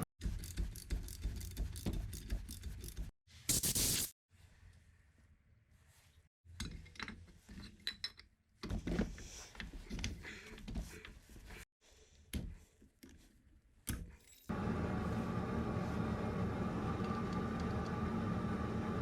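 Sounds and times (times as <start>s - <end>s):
mechanical running hum: 14.5s - 19.0s.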